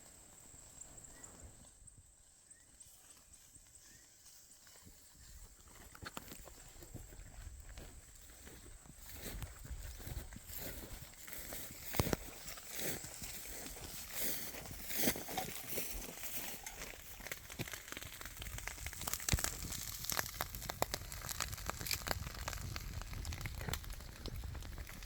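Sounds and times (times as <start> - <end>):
small clicks and crackles: 5.7 - 7.1, 7.8 - 25.0.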